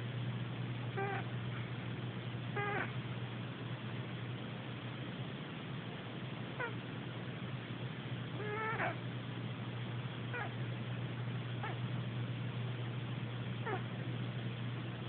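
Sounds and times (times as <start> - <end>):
cat snoring with squeaks: 1.0 - 1.3, 2.5 - 3.0, 8.4 - 9.0, 10.3 - 10.6, 11.6 - 11.8, 13.6 - 14.0.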